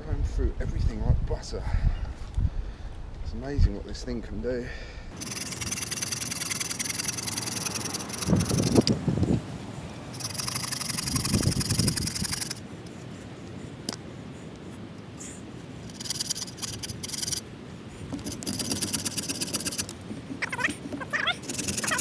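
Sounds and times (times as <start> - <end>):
bow saw cutting log: 5.2 - 9.0, 10.1 - 13.0, 15.8 - 19.9.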